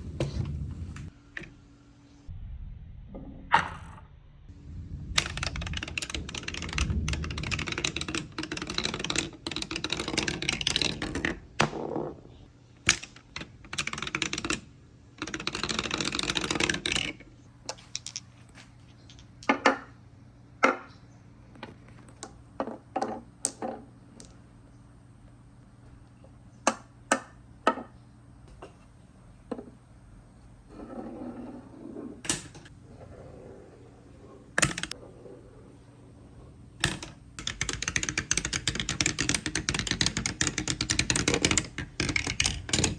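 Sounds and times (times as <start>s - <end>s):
marbles rattling down wooden track: 5.2s - 12.2s, 12.9s - 17.2s, 34.6s - 35.0s, 36.8s - 42.9s.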